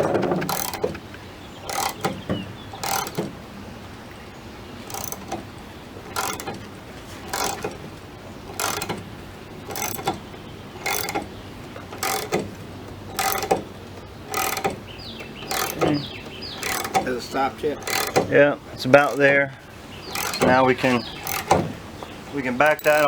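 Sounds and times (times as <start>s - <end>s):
ratchet wrench clicking: 0.4s - 1.0s, 1.6s - 2.2s, 2.8s - 3.3s, 4.8s - 5.4s, 6.1s - 6.6s, 7.3s - 7.8s, 8.5s - 9.0s, 9.7s - 10.2s, 10.8s - 11.3s, 11.9s - 12.4s, 13.1s - 13.7s, 14.3s - 14.8s, 15.4s - 17.1s, 17.8s - 18.3s, 20.0s - 21.6s, 22.7s - 23.0s.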